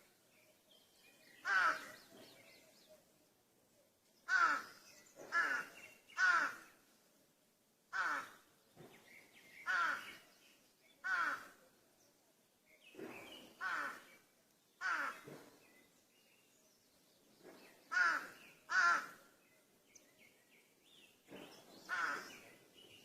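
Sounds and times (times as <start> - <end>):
crow cawing: 1.4 - 1.9, 4.3 - 4.7, 5.3 - 6.7, 7.9 - 8.4, 9.6 - 10.2, 11.0 - 11.6, 13.6 - 14.1, 14.8 - 15.3, 17.9 - 19.2, 21.9 - 22.4.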